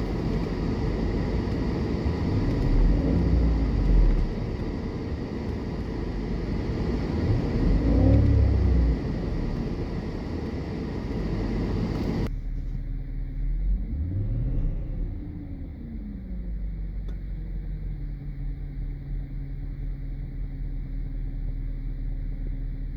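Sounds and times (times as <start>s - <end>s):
car engine revving: 0.0s - 12.3s, 13.4s - 19.0s.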